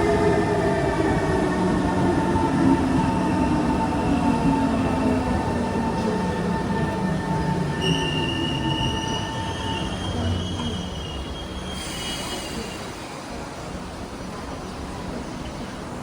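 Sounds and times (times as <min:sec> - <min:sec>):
high-pitched brake squeal: 0:07.7 - 0:13.2.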